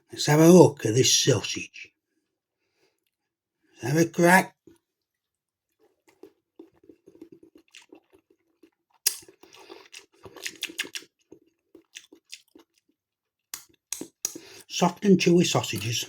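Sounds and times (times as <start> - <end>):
person chewing: 4.6 - 15.0, 15.6 - 16.0.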